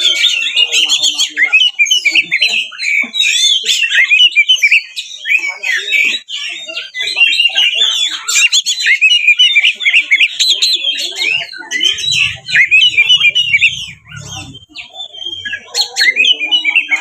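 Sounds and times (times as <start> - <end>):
songbird whistles and chirps: 0.0 - 17.0.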